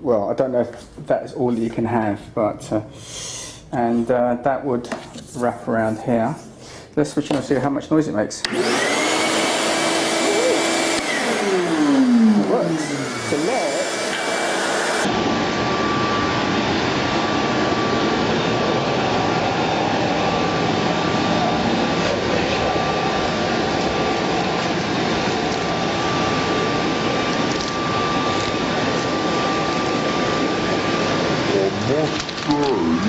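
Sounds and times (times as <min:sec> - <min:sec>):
shop vacuum running: 0:08.3 - 0:33.0.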